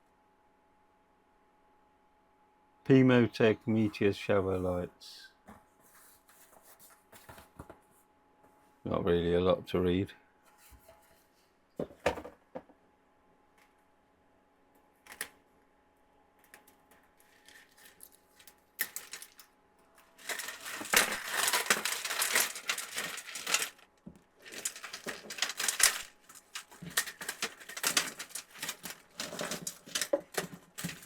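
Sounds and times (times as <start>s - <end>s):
wires rustling: 17.2s - 31.0s
light strands rattling and clicking: 20.2s - 23.8s, 24.4s - 31.0s.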